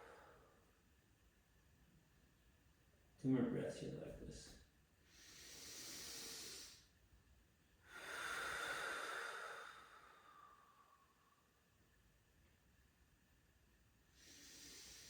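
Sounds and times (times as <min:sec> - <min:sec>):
person breathing slowly and deeply: 0:00.0 - 0:00.6, 0:05.0 - 0:06.9, 0:07.8 - 0:11.5, 0:14.1 - 0:15.0.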